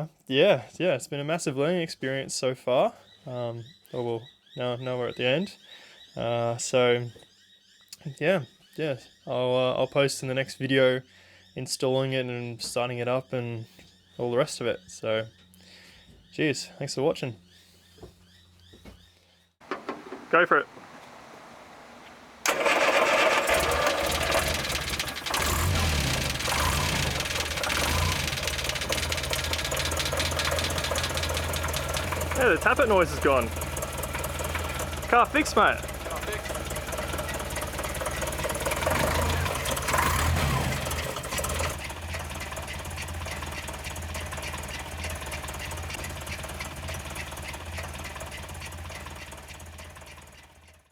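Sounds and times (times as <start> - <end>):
air-cooled car engine running: 19.6 - 50.8.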